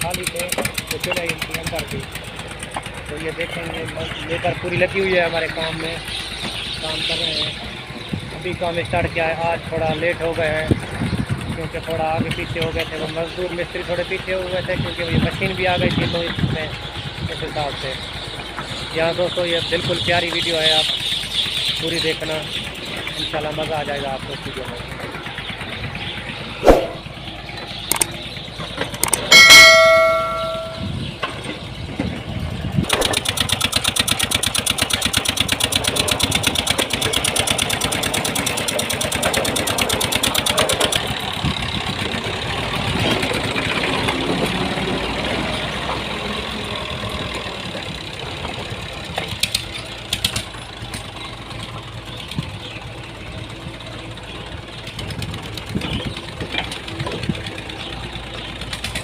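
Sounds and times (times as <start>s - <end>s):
fast regular clatter: 0.0s - 4.0s, 32.8s - 41.1s
diesel engine running: 0.0s - 59.0s
loud metallic clang: 26.6s - 27.1s, 29.1s - 31.1s.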